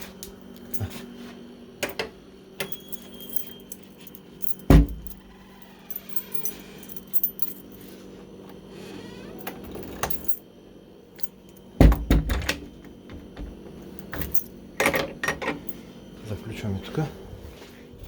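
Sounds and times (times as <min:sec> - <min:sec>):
keys jangling: 0:02.6 - 0:07.9, 0:09.4 - 0:10.4, 0:14.0 - 0:14.5.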